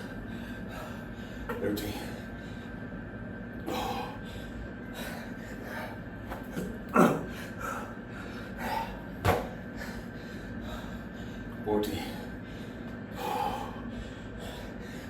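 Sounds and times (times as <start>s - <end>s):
man breathing hard and gasping: 3.6s - 6.1s, 7.0s - 15.0s.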